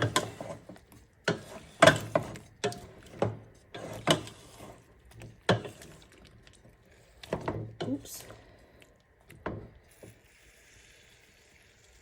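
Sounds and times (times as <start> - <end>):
utensils knocking against cookware: 0.0 - 0.6, 1.3 - 4.3.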